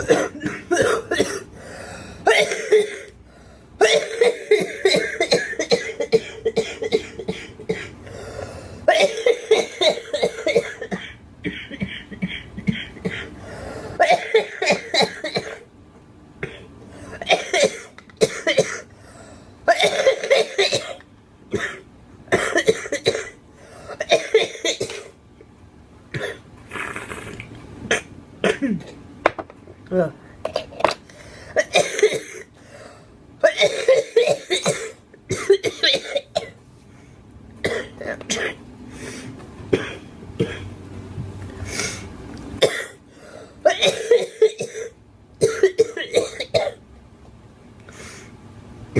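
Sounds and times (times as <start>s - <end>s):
girl coughing: 0.0s - 1.5s, 2.3s - 3.1s, 3.8s - 8.0s, 8.9s - 13.3s, 14.0s - 15.6s, 16.4s - 18.9s, 19.7s - 23.4s, 24.0s - 25.1s, 26.2s - 26.4s, 27.9s - 29.0s, 31.6s - 32.5s, 33.4s - 36.6s, 37.6s - 38.6s, 39.8s - 40.7s, 42.6s - 43.0s, 43.6s - 46.8s.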